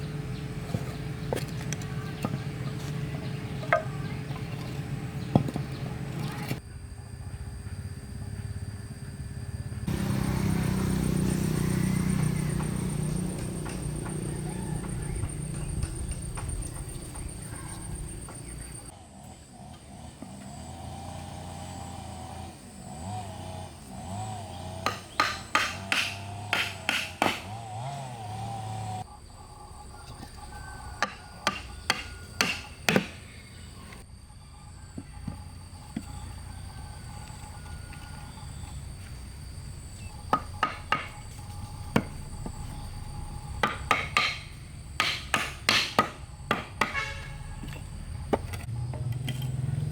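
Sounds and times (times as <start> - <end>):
tool blows striking wood: 24.8 - 27.6, 31.0 - 33.2, 43.6 - 47.4.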